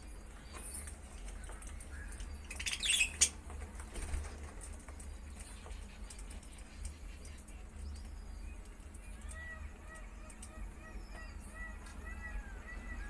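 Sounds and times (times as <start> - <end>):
wing flutter: 0.5 - 7.8
budgerigars chirping: 1.9 - 3.4.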